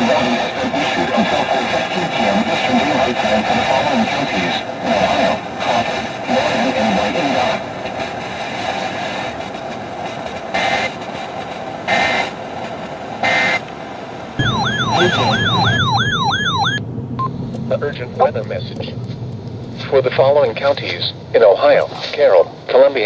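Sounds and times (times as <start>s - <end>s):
radio static hiss: 0.0s - 23.0s
data-burst screeches: 14.4s - 16.8s
warbling alert tone: 14.4s - 16.8s.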